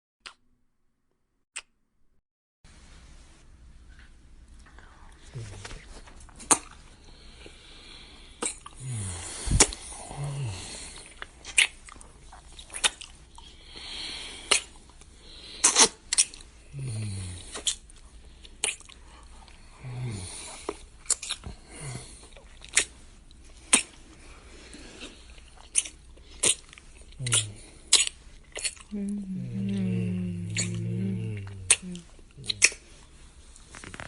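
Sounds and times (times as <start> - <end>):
breathy noise: 7.0 - 11.2, 28.9 - 34.0
wet kissing smacks: 8.4 - 8.7, 9.5 - 9.9, 11.4 - 11.8, 12.7 - 13.0, 14.5 - 14.7, 15.6 - 16.4, 17.5 - 17.8, 18.6 - 18.9, 22.7 - 22.9, 23.7 - 24.0, 25.7 - 28.8, 31.7 - 32.8
low falling hums: 28.9 - 32.6.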